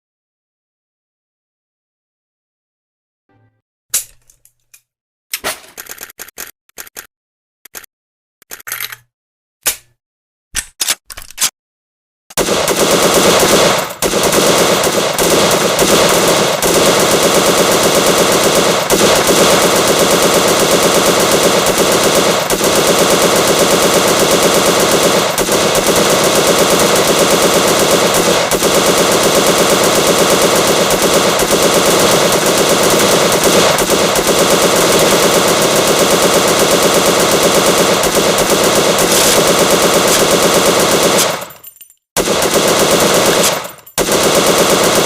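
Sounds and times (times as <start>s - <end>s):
machine gun automatic fire: 12.3s - 41.5s, 42.2s - 45.0s.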